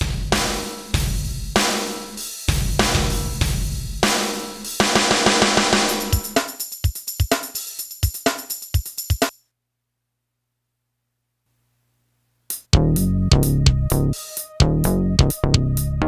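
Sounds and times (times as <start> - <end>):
sampled drum pattern: 0.0 - 9.4, 12.5 - 16.0
bass-heavy sample with drums: 2.5 - 4.1, 12.6 - 16.0.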